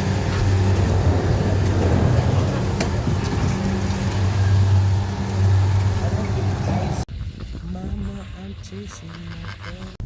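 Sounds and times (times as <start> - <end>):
engine humming: 0.0 - 7.4.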